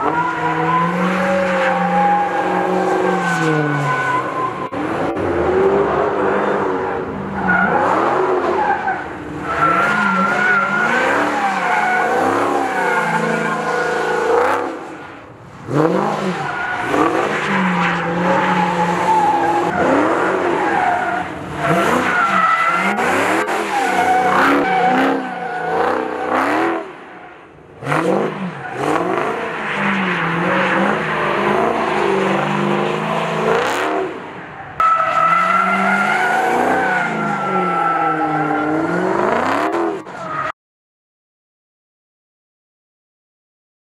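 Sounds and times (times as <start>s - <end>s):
car engine revving: 0.0s - 27.0s, 27.7s - 34.3s, 35.2s - 40.0s.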